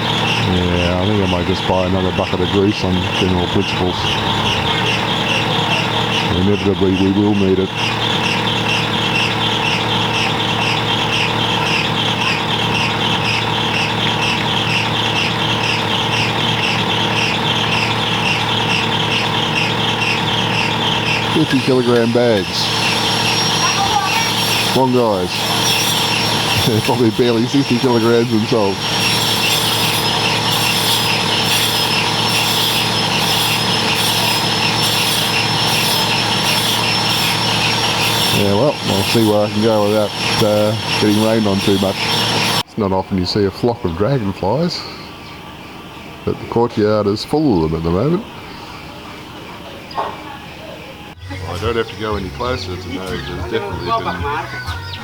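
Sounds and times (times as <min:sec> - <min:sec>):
high rasping pulse: 0:00.0 - 0:42.7
concrete mixer engine running: 0:00.0 - 0:55.0.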